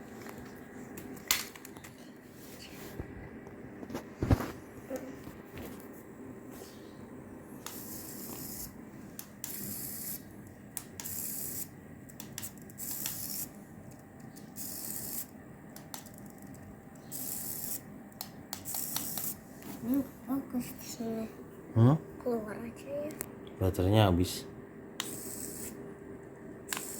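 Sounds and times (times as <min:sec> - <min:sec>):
toy robot motors whirring: 0:07.6 - 0:17.8, 0:18.5 - 0:19.4, 0:25.0 - 0:25.8, 0:26.7 - 0:26.9.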